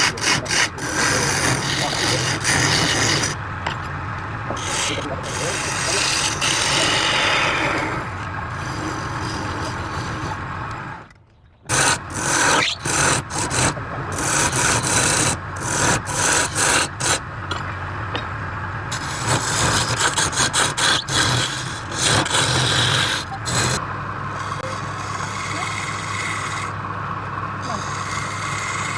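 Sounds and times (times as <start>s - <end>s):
lathe motor hum: 0.0s - 28.9s
tool scraping spinning wood: 0.0s - 28.9s.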